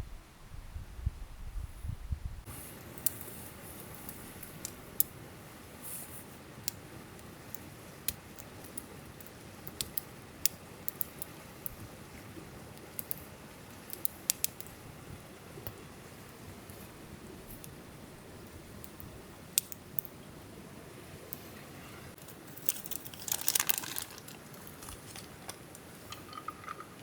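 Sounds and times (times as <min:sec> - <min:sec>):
soft steady hiss: 0:00.0 - 0:27.0
campfire crackling and popping: 0:02.7 - 0:05.4, 0:06.4 - 0:20.5, 0:22.2 - 0:27.0.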